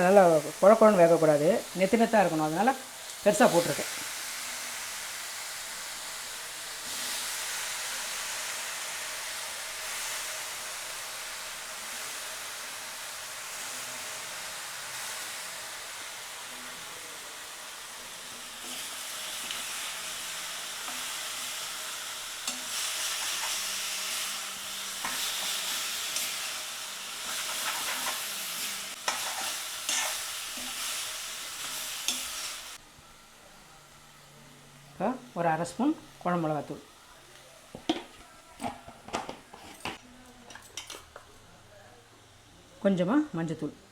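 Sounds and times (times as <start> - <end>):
vegetables sizzling in a pan: 0.0 - 43.9
spoon scraping and knocking a pan: 27.2 - 30.9, 37.7 - 41.3.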